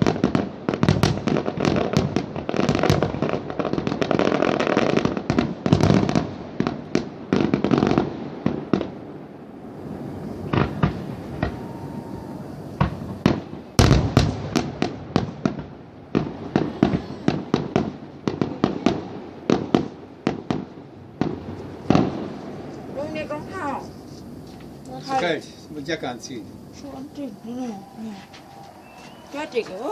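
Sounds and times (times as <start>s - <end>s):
fireworks and firecrackers bangs: 0.0s - 29.9s
loud deep firework boom: 9.8s - 23.8s.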